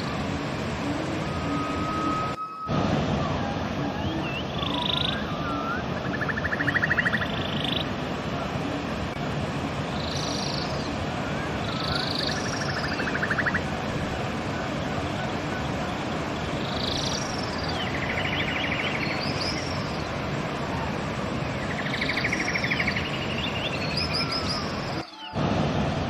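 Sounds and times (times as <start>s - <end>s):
river rushing: 0.0s - 26.0s
songbird singing with trill: 0.8s - 2.8s, 3.4s - 7.9s, 9.9s - 13.8s, 14.9s - 20.2s, 21.5s - 25.4s.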